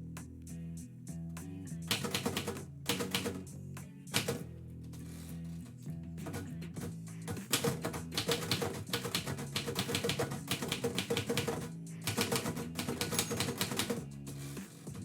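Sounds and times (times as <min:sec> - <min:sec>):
quiet background music: 0:00.0 - 0:15.0
typewriter keys striking: 0:01.9 - 0:03.4, 0:04.2 - 0:04.4, 0:07.3 - 0:14.0.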